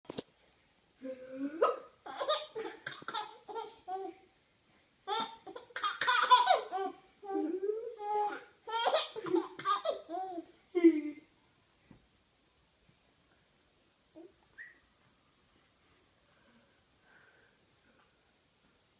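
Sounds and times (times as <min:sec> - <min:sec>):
baby laughing: 0:01.6 - 0:04.2, 0:05.1 - 0:07.4, 0:08.0 - 0:10.5.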